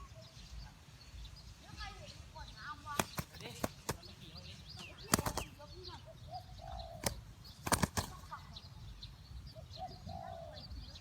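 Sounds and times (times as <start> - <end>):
small birds chirping: 0.0 - 11.0
dove cooing: 5.0 - 8.5, 9.5 - 11.0.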